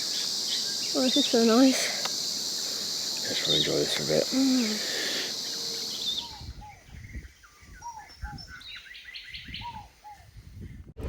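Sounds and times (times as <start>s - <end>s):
insects buzzing: 0.0s - 7.5s
birds calling: 0.0s - 10.3s
high bird chirps: 5.1s - 10.2s.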